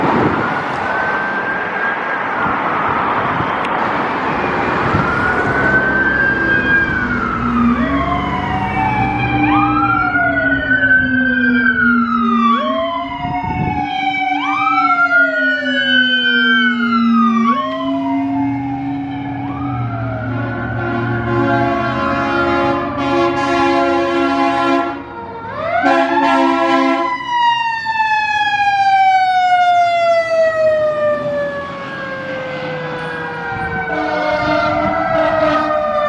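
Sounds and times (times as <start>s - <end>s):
loud rushing noise: 0.0s - 9.3s
fire truck sirens wailing: 0.0s - 36.0s.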